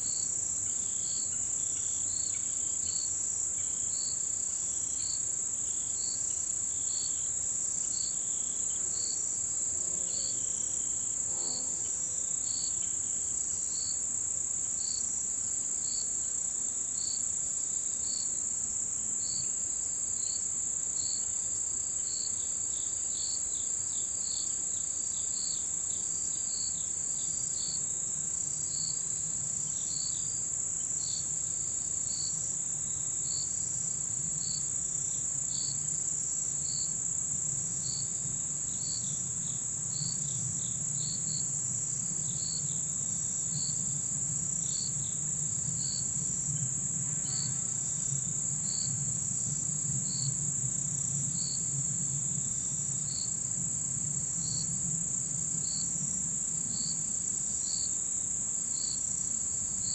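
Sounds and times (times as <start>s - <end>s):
high-pitched cricket trill: 0.0s - 59.9s
lower insect chirp: 0.0s - 59.9s.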